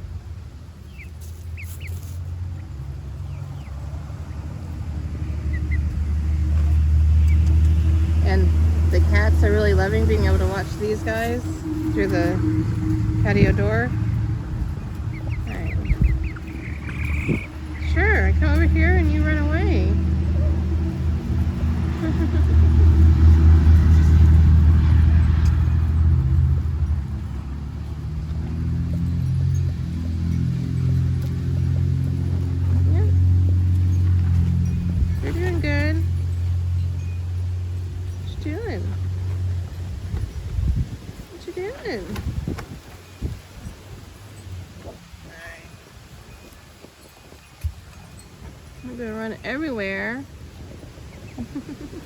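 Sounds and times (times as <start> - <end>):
steady low rumble: 0.0 - 46.8
chicks peeping: 0.8 - 26.3
wind buffeting microphone: 2.3 - 52.0.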